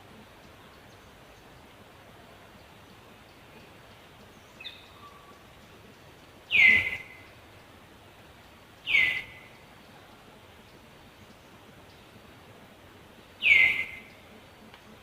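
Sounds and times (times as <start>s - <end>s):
faint chirp: 2.4s - 7.7s, 8.4s - 12.2s.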